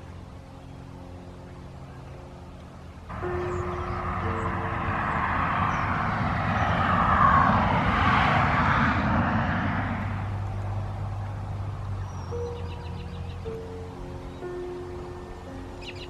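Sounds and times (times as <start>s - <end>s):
vehicle passing by: 3.1s - 14.2s.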